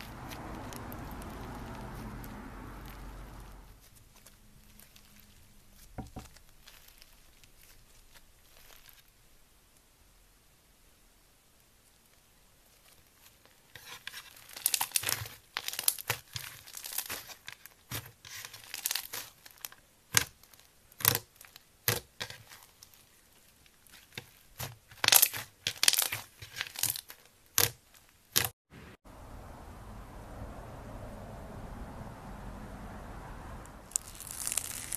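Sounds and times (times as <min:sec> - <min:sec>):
crunchy slime crackling: 0:00.0 - 0:09.1, 0:12.7 - 0:28.6, 0:33.8 - 0:34.9.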